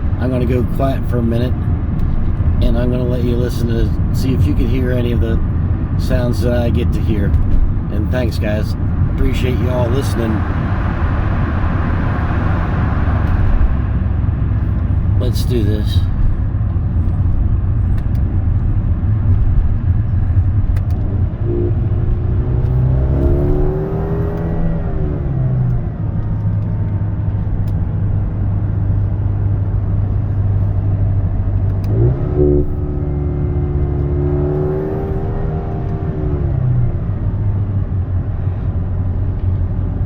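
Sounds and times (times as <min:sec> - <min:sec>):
car engine drone: 0:00.0 - 0:40.0
road noise: 0:00.0 - 0:40.0.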